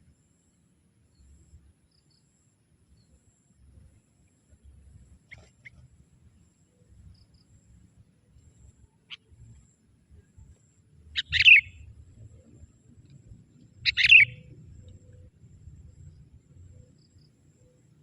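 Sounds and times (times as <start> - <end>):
bird chirping: 10.4 - 18.0.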